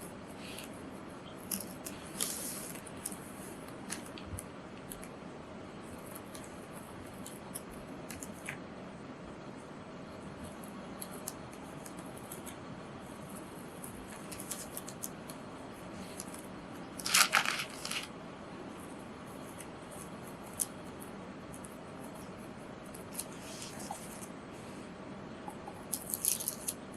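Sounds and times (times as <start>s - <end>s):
scissors cutting paper: 17.0s - 18.1s, 25.9s - 26.8s.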